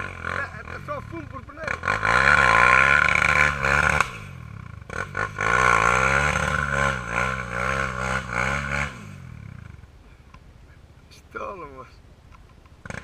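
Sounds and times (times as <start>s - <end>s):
quad engine revving: 0.0s - 9.8s.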